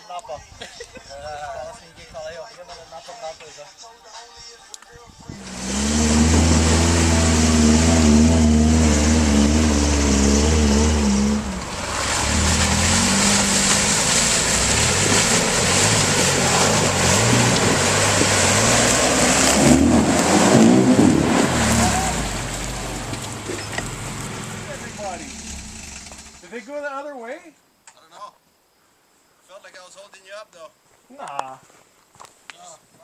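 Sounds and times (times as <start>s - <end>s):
truck engine under load: 5.4s - 26.4s
tyres rumbling over mud: 5.4s - 26.4s.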